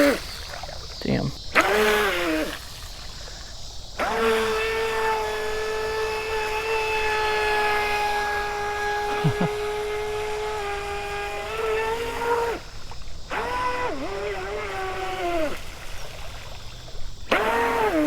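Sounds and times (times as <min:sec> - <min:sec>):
electric motor high-pitched whine: 0:04.0 - 0:16.4, 0:17.3 - 0:18.0.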